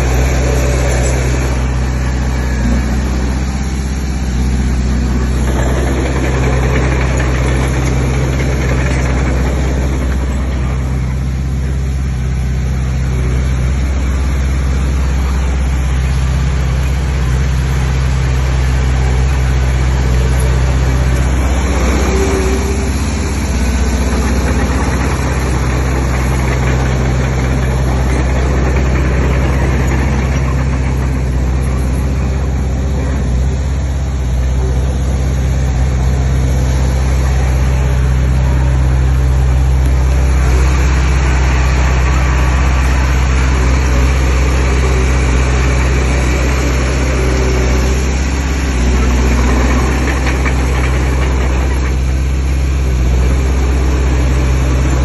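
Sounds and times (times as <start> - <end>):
heavy diesel engine running: 0.0 - 55.0.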